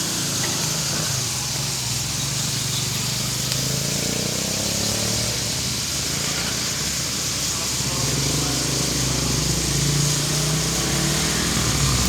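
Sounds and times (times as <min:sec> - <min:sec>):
constant hiss: 0:00.0 - 0:12.0.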